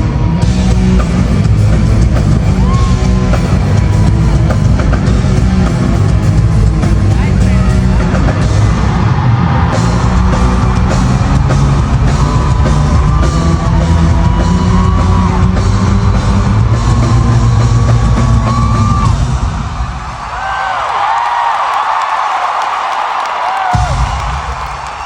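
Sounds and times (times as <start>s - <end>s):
heavy drum beat: 0.0s - 20.3s, 23.7s - 24.9s
live rock band playing: 0.1s - 8.9s, 9.7s - 19.4s.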